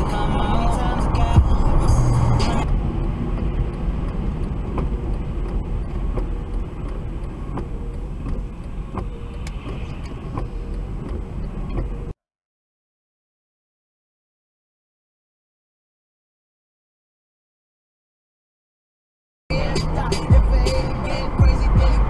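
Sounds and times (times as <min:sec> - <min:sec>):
car engine and road noise: 0:00.0 - 0:12.2, 0:19.5 - 0:22.0.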